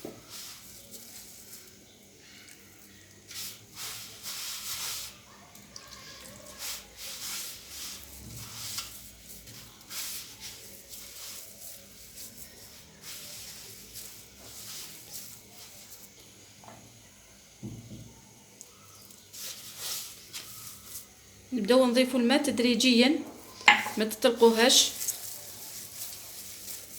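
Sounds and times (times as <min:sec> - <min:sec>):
hands rustling flour in a bowl: 0:00.0 - 0:16.6, 0:18.7 - 0:22.5, 0:23.5 - 0:26.9.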